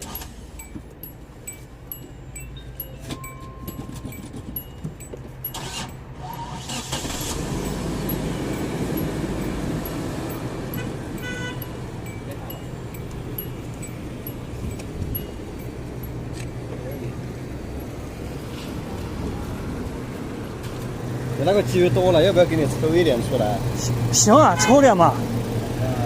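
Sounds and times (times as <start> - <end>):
metallic clinks of tools: 0.0 - 17.2
van engine idling: 0.0 - 26.0.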